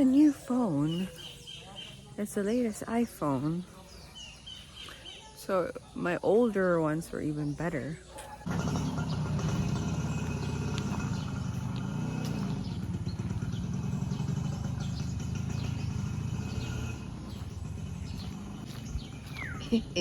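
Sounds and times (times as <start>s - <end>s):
motorcycle-like engine running: 8.4s - 20.0s
faint bird chirps: 12.5s - 20.0s.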